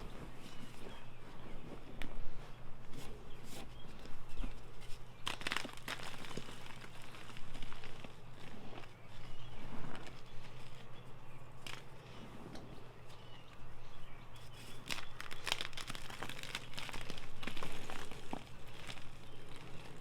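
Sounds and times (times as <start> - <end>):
low steady hum: 0.0 - 20.0
chalk being crushed: 3.0 - 12.3, 14.4 - 20.0.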